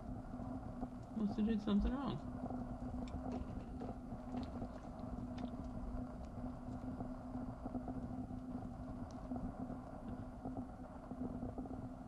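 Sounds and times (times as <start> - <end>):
low mechanical hum: 0.0 - 12.0
faint clicks: 8.3 - 9.3.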